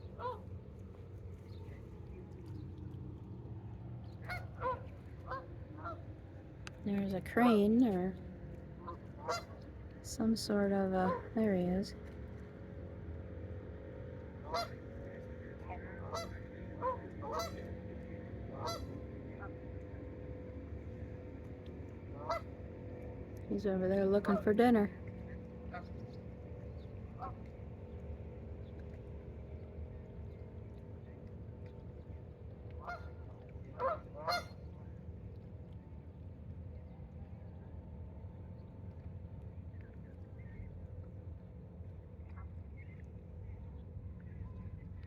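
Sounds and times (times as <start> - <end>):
steady low hum: 0.0 - 45.0
geese honking: 9.2 - 9.5, 14.5 - 14.8, 15.7 - 17.7, 18.5 - 19.0, 22.2 - 22.4, 23.7 - 24.9, 33.8 - 34.5.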